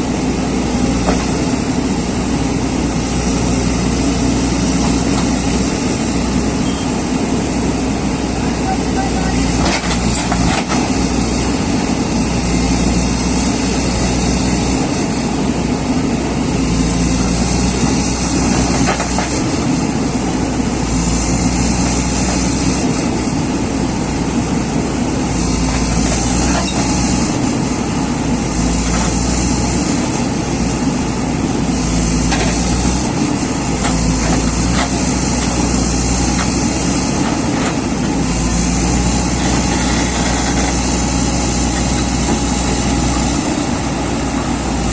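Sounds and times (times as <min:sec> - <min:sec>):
excavator diesel engine rumbling: 0:00.0 - 0:44.9.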